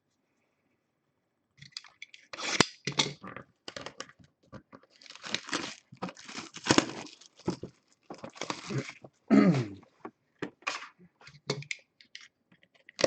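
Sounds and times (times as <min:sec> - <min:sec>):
packaging crinkling and tearing: 0:04.9 - 0:09.2.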